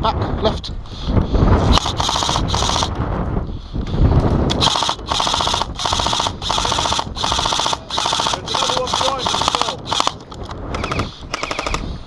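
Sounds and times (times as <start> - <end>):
airsoft rifle firing bursts: 1.7 - 2.9, 4.6 - 11.8.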